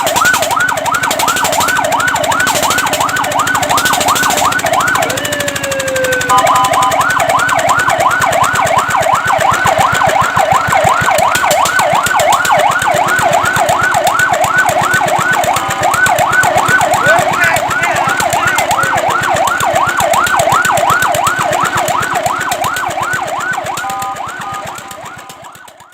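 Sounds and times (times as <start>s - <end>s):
fire truck siren yelping: 0.0s - 25.9s
steady siren tone: 0.0s - 25.9s.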